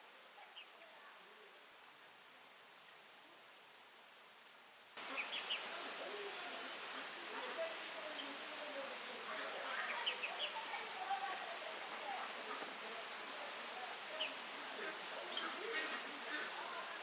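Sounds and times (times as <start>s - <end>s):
insect chorus whine: 0.0s - 17.0s
faint chirps: 5.0s - 17.0s.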